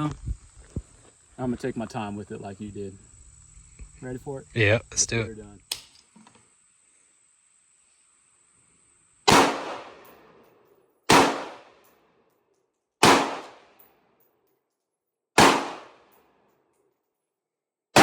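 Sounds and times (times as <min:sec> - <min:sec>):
gunshots with echo: 0:09.3 - 0:10.0, 0:11.1 - 0:11.7, 0:13.0 - 0:13.6, 0:15.4 - 0:16.0.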